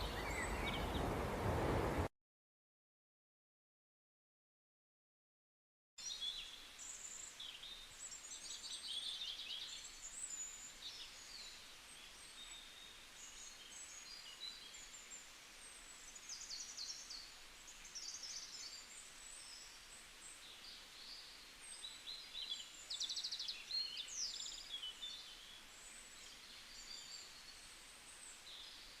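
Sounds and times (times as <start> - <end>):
songbirds chirping and trilling: 0.0 - 1.8, 6.0 - 29.0.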